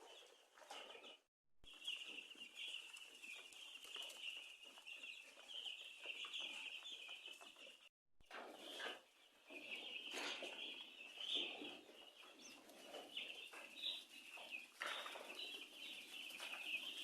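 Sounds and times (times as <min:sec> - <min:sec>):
chicks peeping: 0:00.0 - 0:17.0
wings fluttering and scuffling: 0:01.8 - 0:07.5, 0:12.7 - 0:17.0.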